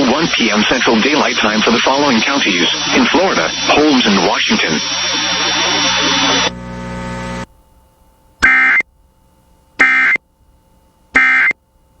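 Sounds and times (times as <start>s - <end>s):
radio hiss and hum: 0.0s - 7.5s
shrill buzzing data tone bursts: 0.4s - 7.4s, 8.4s - 8.8s.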